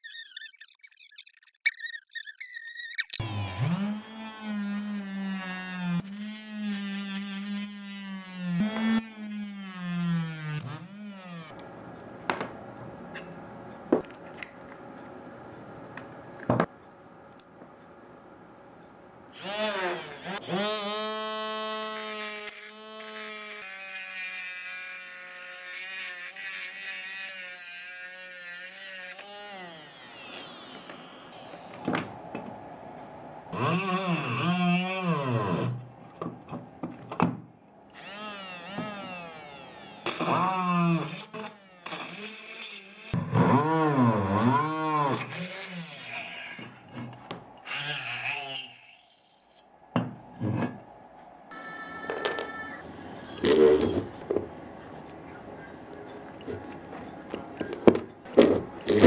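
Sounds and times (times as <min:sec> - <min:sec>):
small drill motor whining: 0:03.2 - 0:11.6, 0:19.4 - 0:31.8, 0:33.5 - 0:35.8, 0:38.0 - 0:46.8, 0:47.6 - 0:49.6.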